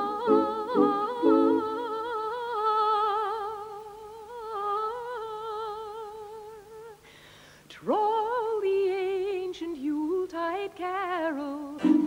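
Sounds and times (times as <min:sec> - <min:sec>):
voices singing without words: 0:00.0 - 0:07.0, 0:11.3 - 0:12.0.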